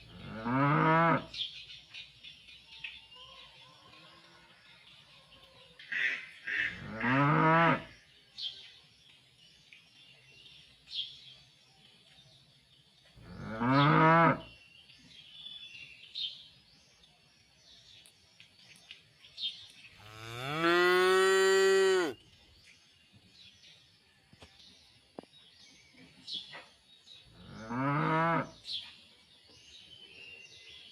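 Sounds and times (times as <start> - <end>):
cows mooing: 0.1 - 1.3, 20.0 - 22.2.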